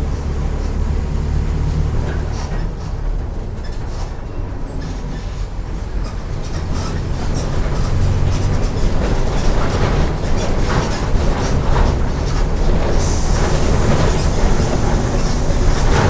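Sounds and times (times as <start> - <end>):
bus diesel engine running: 0.0 - 16.0.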